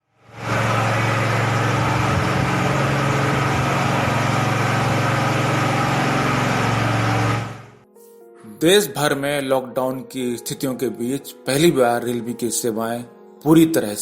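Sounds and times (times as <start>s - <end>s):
engine idling: 0.3s - 7.8s.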